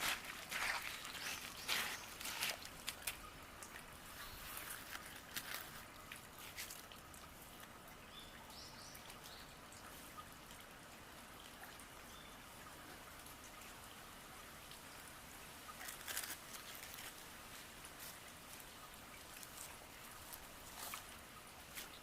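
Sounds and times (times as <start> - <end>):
water trickling: 0.0 - 22.0.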